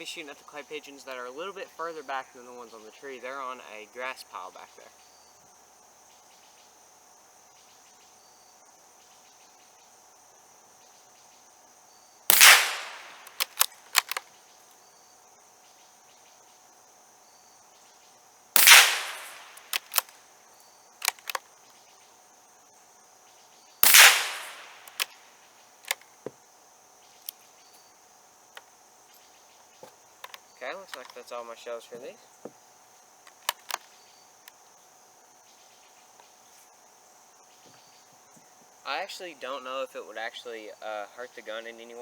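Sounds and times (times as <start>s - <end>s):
insects humming: 0.0s - 42.0s
rifle action metallic clicks: 12.3s - 14.2s, 18.6s - 20.1s, 21.0s - 21.4s, 23.8s - 25.1s, 33.3s - 33.9s
rifle shots: 12.3s - 14.2s, 18.6s - 20.1s, 23.8s - 25.1s.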